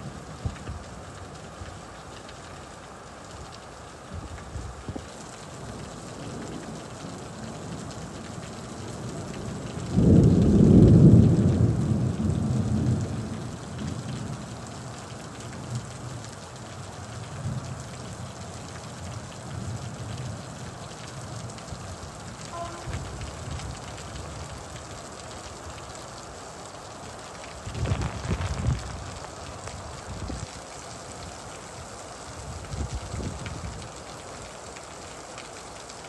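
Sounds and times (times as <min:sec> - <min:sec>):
heavy rain: 0:00.0 - 0:36.0
thunder rumble: 0:09.5 - 0:13.5, 0:22.5 - 0:24.6, 0:27.7 - 0:29.3.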